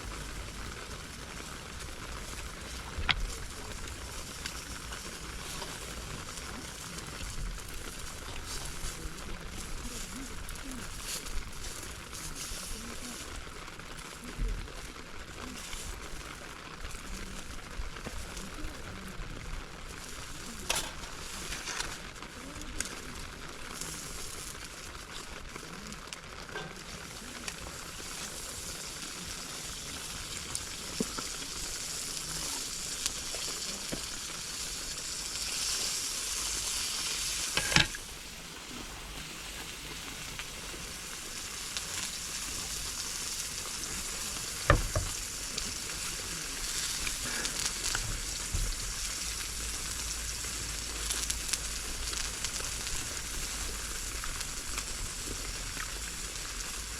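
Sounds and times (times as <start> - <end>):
food sizzling in a pan: 0.0 - 56.9
knock: 44.7 - 45.1.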